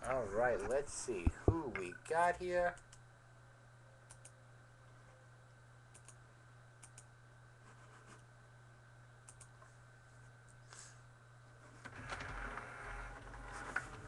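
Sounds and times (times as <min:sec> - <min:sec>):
low electrical hum: 0:00.0 - 0:14.0
faint computer clicks: 0:05.9 - 0:06.2, 0:06.8 - 0:07.1, 0:09.2 - 0:09.7.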